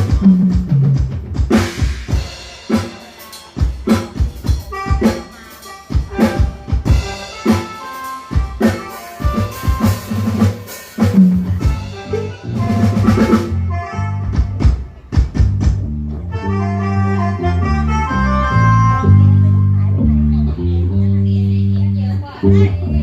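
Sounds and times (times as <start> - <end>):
drum kit hits: 0.0 - 15.9
bass and pitched instruments: 0.0 - 23.0.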